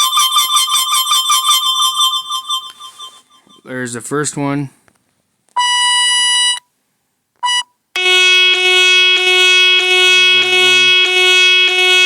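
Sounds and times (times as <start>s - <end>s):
long buzzy alert tone: 8.0s - 12.0s.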